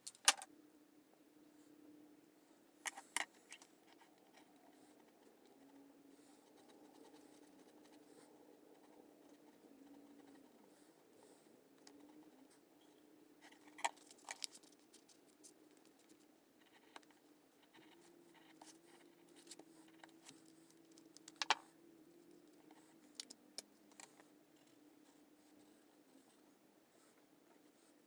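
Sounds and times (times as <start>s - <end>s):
faint steady hum: 0.0s - 28.0s
light clicks and taps of tools: 19.4s - 21.7s.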